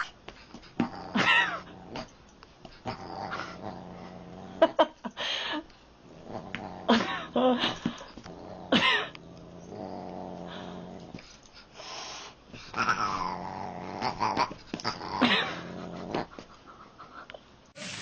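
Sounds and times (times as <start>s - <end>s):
cat growling: 6.1s - 7.6s, 8.2s - 11.2s, 12.8s - 16.4s.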